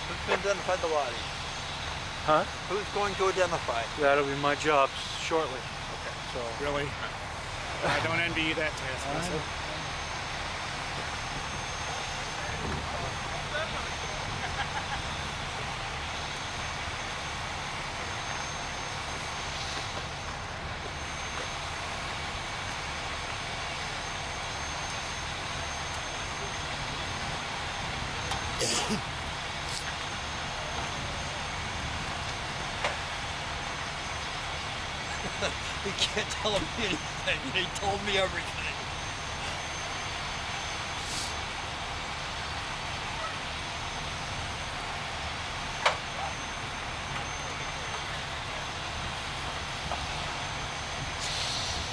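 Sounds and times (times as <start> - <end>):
engine drone with hiss: 0.0 - 51.9
hiss: 41.0 - 41.4, 51.2 - 51.9.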